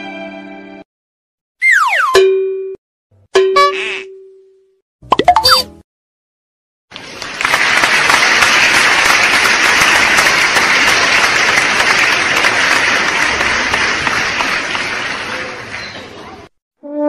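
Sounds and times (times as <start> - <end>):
crowd clapping: 6.9 - 16.6.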